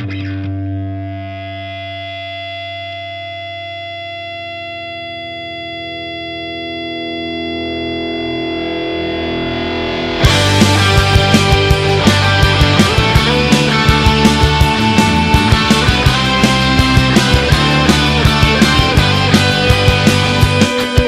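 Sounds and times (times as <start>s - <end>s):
distorted electric guitar chord: 0.0s - 21.0s
rock band with drums: 5.5s - 21.0s.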